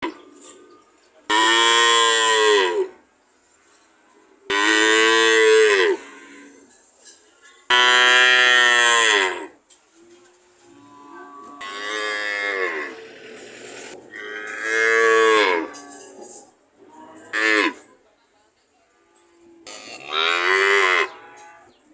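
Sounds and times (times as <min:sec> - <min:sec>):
cow mooing: 0:07.7 - 0:09.5, 0:10.7 - 0:13.4, 0:14.1 - 0:16.1, 0:16.9 - 0:17.9, 0:19.6 - 0:21.7.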